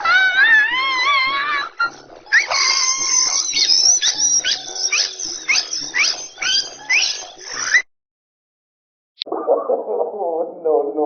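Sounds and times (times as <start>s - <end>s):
monkey squealing: 0.0s - 7.9s.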